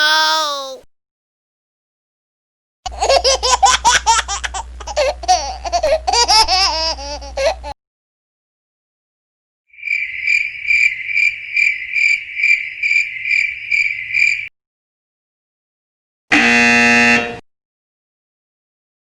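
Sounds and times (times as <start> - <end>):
cricket chirping trill: 9.8 - 14.5.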